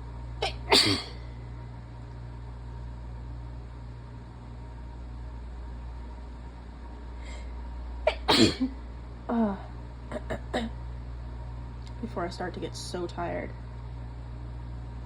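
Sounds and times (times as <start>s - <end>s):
steady low hum: 0.0s - 15.0s
woman sneezing: 0.4s - 1.2s, 8.1s - 8.7s.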